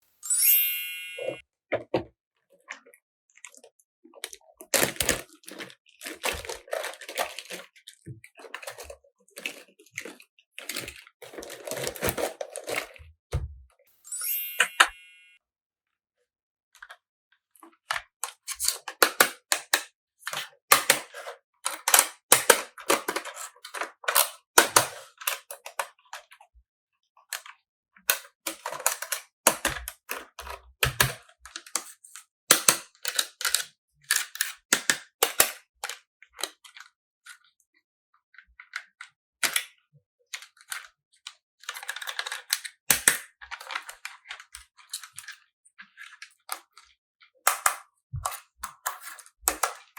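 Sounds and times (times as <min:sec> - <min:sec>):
plastic toy pieces clicking: 0:32.5 - 0:36.8.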